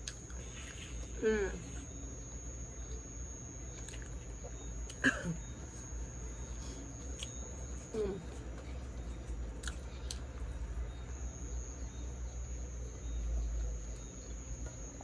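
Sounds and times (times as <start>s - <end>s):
night insects trilling: 0.0s - 15.0s.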